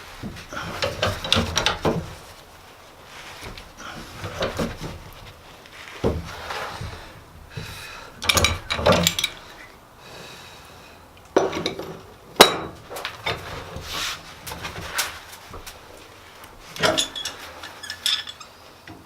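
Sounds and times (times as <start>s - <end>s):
metal clinking and knocking: 0.2s - 2.2s, 8.2s - 9.5s, 16.7s - 19.0s.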